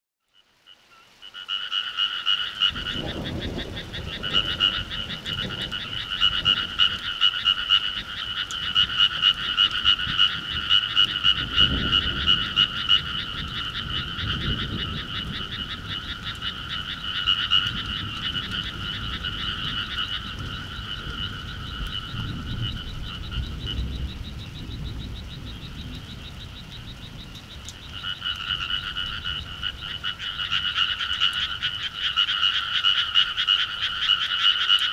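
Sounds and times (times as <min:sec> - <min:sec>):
frogs croaking: 0:00.2 - 0:34.9.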